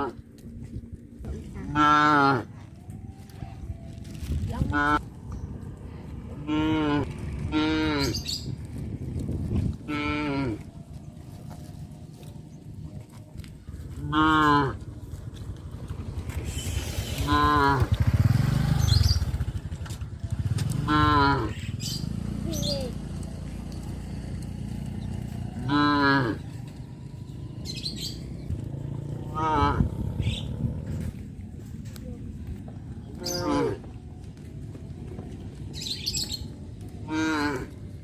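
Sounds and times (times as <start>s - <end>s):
cattle mooing: 1.6s - 2.6s, 6.4s - 8.2s, 9.8s - 10.7s, 14.0s - 14.9s, 17.2s - 18.0s, 20.8s - 21.6s, 25.6s - 26.4s, 29.0s - 31.2s, 33.2s - 33.8s, 37.0s - 37.8s.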